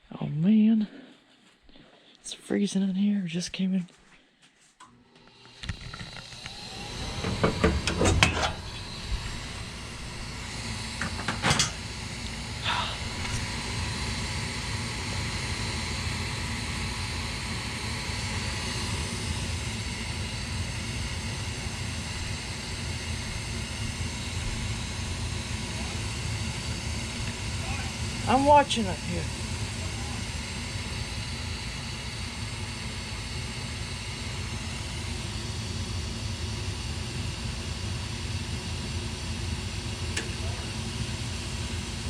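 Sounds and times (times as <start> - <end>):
furnace fan whooshing: 4.8 - 42.0
knocks and clicks: 7.2 - 8.6.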